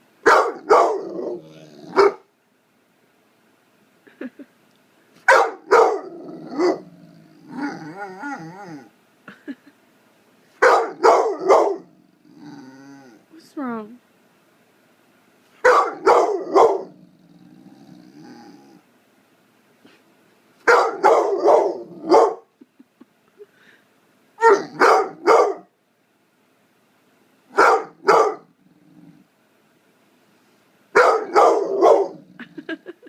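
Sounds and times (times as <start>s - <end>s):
dog barking sharply: 0.2s - 1.0s, 2.0s - 2.2s, 5.3s - 6.0s, 10.6s - 11.8s, 15.6s - 16.9s, 20.6s - 22.5s, 24.4s - 25.7s, 27.6s - 28.4s, 31.0s - 32.1s
dog grumbling: 1.0s - 2.2s, 6.0s - 8.9s, 11.8s - 13.3s, 16.4s - 18.9s, 28.4s - 29.3s, 31.7s - 32.8s.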